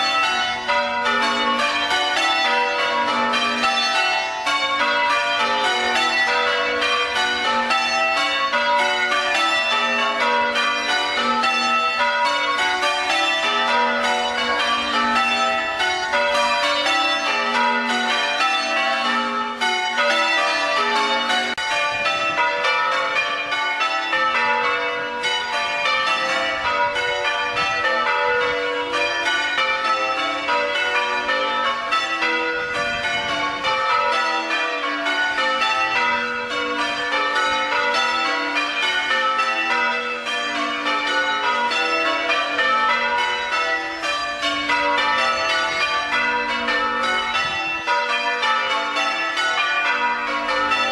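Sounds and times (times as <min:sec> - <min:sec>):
church bells change ringing: 0:00.0 - 0:50.9.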